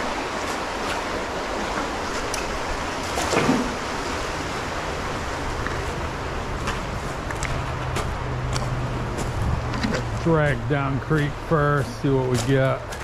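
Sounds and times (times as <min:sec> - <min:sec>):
creek water rushing: 0:00.0 - 0:13.0.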